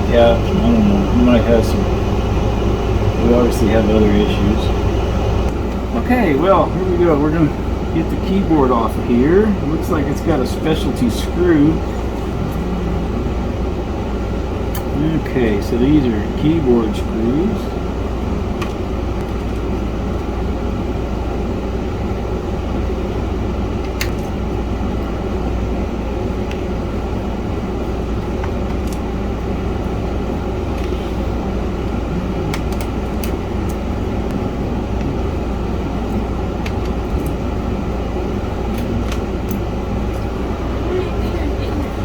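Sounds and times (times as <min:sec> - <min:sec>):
fan whooshing: 0:00.0 - 0:42.0.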